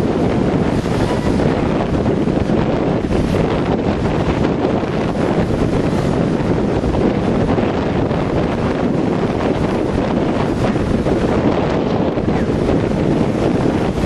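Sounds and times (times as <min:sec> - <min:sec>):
sea waves breaking: 0:00.0 - 0:14.0
wind on microphone: 0:00.0 - 0:14.0.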